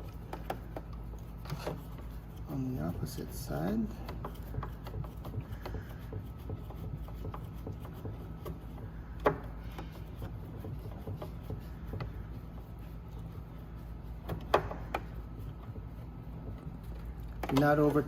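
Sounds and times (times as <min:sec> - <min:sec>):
steady low hum: 0:00.0 - 0:18.0
screw clicking and rubbing: 0:04.0 - 0:18.0.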